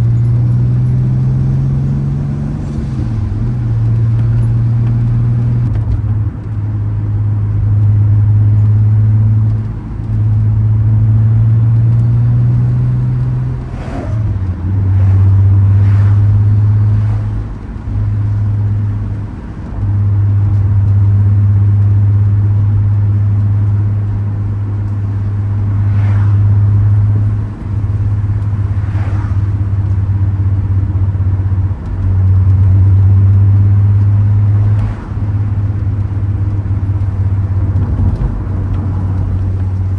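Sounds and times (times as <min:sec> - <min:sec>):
car engine and exhaust droning: 0:00.0 - 0:39.9.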